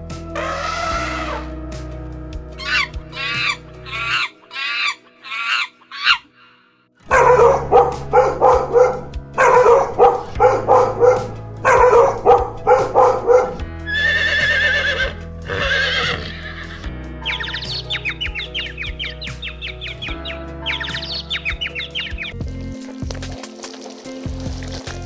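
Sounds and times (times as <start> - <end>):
background music: 0.0 - 25.0
dog barking: 7.1 - 13.5.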